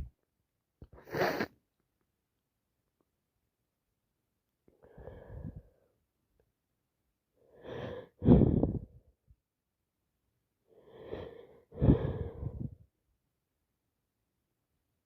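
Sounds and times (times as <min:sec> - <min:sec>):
short in-breath: 0:04.8 - 0:05.9, 0:07.6 - 0:09.0, 0:10.9 - 0:12.8.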